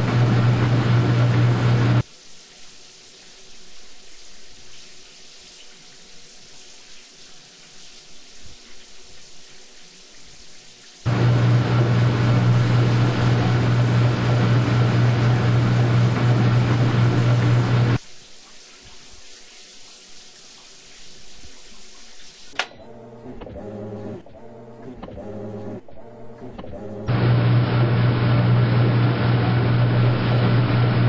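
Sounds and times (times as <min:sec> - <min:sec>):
washing machine motor humming: 0:00.0 - 0:02.0, 0:11.1 - 0:18.0, 0:22.5 - 0:31.0
washing machine water sounds: 0:00.0 - 0:31.0.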